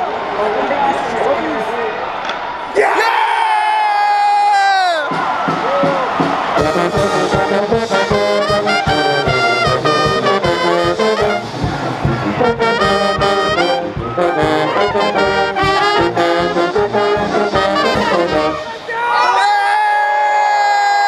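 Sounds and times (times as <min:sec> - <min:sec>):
steady drum beat: 0:04.8 - 0:18.9
brass section playing up-tempo tune: 0:05.4 - 0:18.9.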